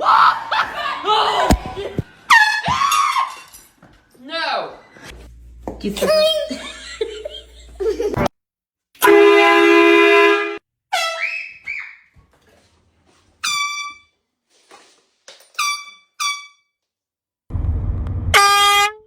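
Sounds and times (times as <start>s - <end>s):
air horn blast: 9.0s - 11.2s, 18.3s - 19.0s
short high-pitched cries: 15.6s - 16.6s.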